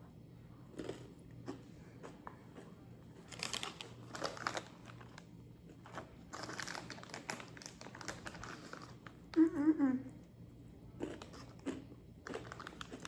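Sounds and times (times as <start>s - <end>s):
crinkly crackling: 3.2s - 9.4s, 12.2s - 13.0s.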